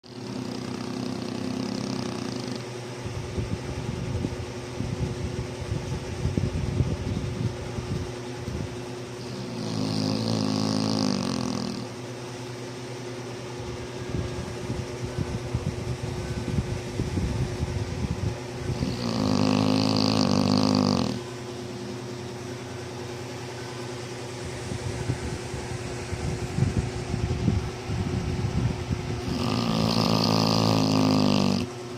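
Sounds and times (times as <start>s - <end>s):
dog snoring: 0.0s - 2.6s, 9.2s - 12.0s, 18.6s - 21.3s, 29.2s - 31.7s
rattling snuffly breathing: 0.0s - 2.8s, 9.2s - 12.0s, 18.4s - 21.3s, 28.3s - 31.7s.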